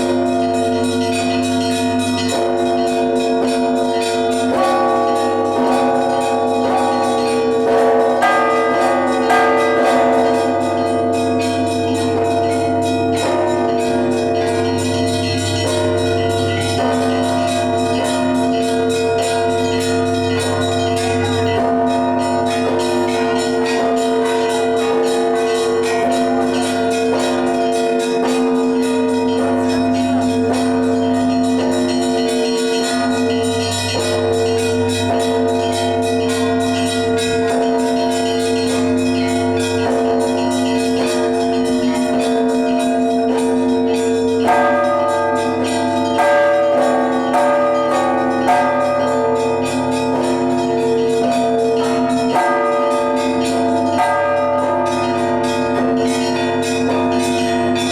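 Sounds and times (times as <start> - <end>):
church bells pealing: 0.0 - 57.9.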